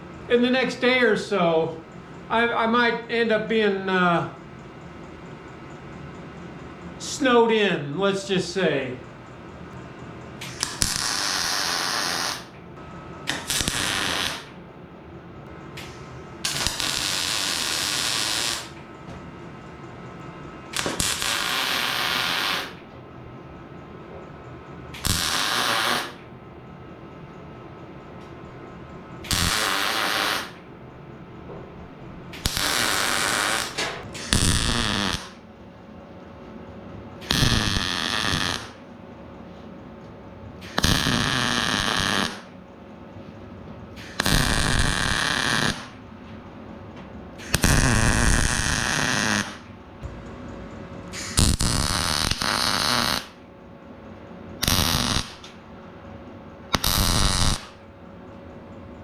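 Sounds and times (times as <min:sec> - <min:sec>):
arc welding crackling: 0:10.4 - 0:12.6, 0:13.3 - 0:14.6, 0:15.8 - 0:18.8, 0:20.6 - 0:22.8, 0:25.0 - 0:26.2, 0:29.2 - 0:30.7, 0:32.3 - 0:35.4, 0:37.2 - 0:38.8, 0:40.6 - 0:42.5, 0:44.0 - 0:46.0, 0:47.4 - 0:49.7, 0:51.1 - 0:53.4, 0:54.6 - 0:55.6, 0:56.7 - 0:57.8.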